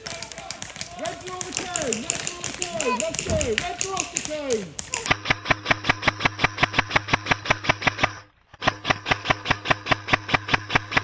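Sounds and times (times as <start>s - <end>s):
airsoft gun firing full-auto: 5.0s - 11.0s
gearbox motor hum: 5.1s - 11.0s.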